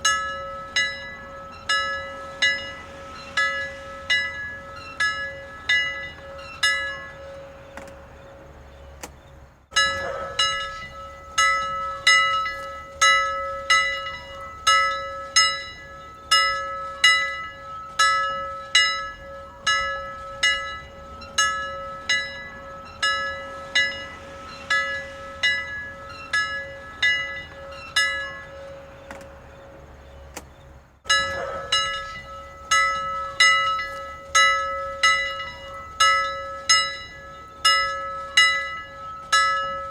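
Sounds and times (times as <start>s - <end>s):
bell ringing: 9.8s - 28.9s, 31.1s - 39.9s.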